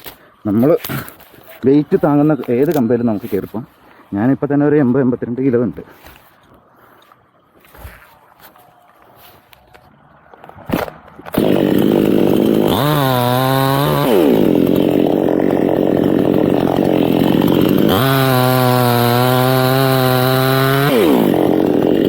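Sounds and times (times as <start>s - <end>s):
chainsaw revving: 11.3s - 22.0s.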